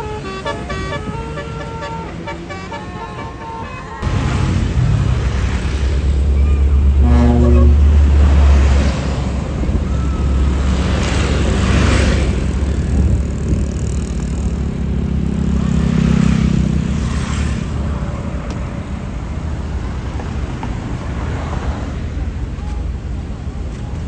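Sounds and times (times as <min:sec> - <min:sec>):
diesel bus engine rumble: 0:00.0 - 0:24.0
passing vehicles: 0:00.0 - 0:24.0.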